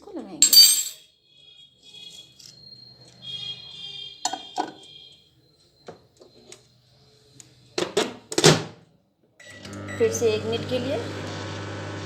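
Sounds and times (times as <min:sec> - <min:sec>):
bowl clinking: 0:00.4 - 0:01.0.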